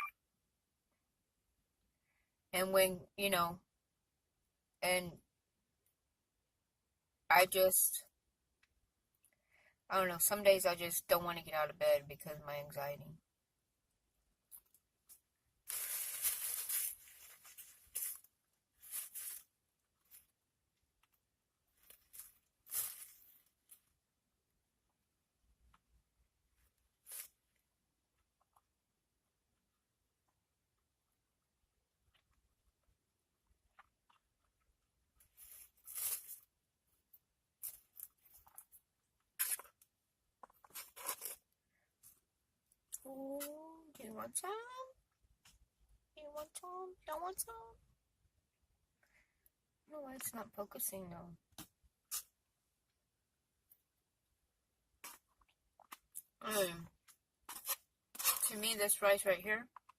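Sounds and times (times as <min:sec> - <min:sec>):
food packaging crinkling: 0:15.7 - 0:20.4, 0:21.8 - 0:23.8, 0:35.3 - 0:36.5.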